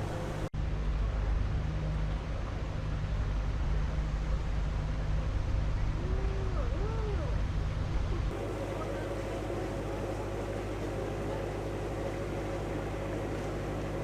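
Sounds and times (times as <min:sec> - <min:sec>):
boat diesel engine humming: 0:00.0 - 0:00.5, 0:08.3 - 0:14.0.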